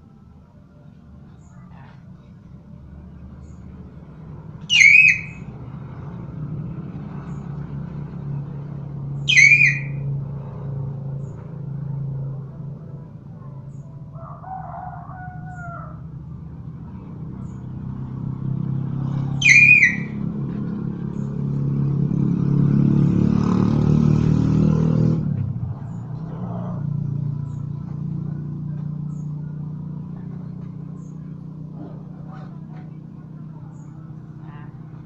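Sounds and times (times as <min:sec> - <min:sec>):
myna bird calling: 0:04.6 - 0:05.6, 0:09.1 - 0:10.2, 0:19.0 - 0:20.4.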